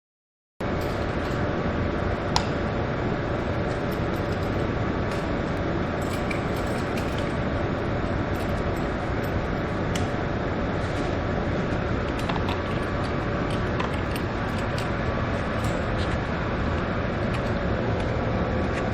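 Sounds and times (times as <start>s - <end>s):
machinery humming: 0.6s - 18.9s.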